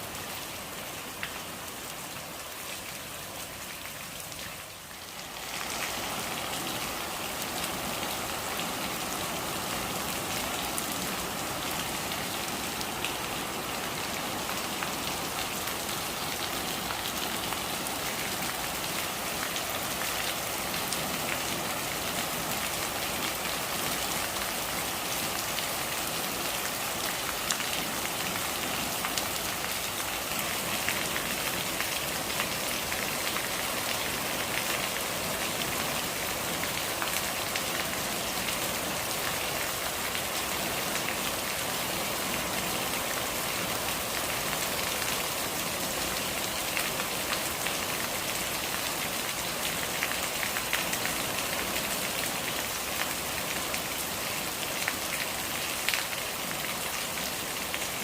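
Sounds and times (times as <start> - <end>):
steady rain patter: 0.0 - 58.0.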